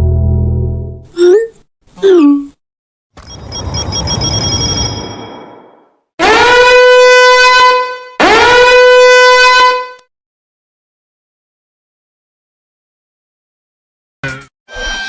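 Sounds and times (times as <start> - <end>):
noisy rumble with ringing tones: 3.2 - 5.9
swooping horn blasts: 6.2 - 10.0.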